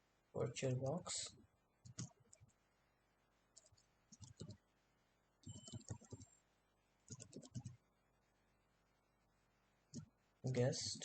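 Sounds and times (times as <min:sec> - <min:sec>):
faint keyboard typing: 0:01.8 - 0:02.6, 0:03.5 - 0:04.6, 0:05.4 - 0:06.4, 0:07.0 - 0:07.8, 0:09.9 - 0:11.0.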